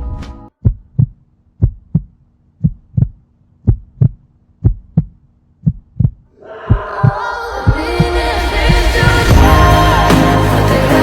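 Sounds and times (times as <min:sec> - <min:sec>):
heartbeat thumps: 0:00.6 - 0:09.7
music: 0:07.7 - 0:11.0.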